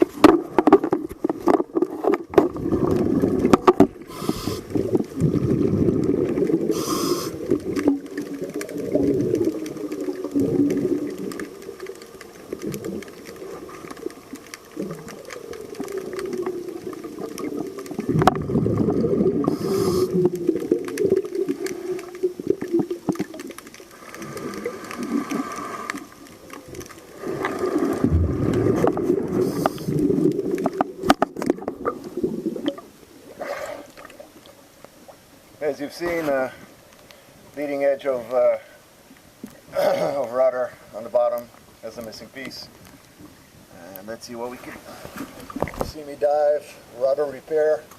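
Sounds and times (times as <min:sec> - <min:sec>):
exhaled bubbles rumbling: 0:00.0 - 0:35.2, 0:45.0 - 0:45.9
regulator inhale hiss: 0:04.0 - 0:04.8, 0:06.7 - 0:07.6, 0:19.4 - 0:20.3, 0:24.2 - 0:26.1.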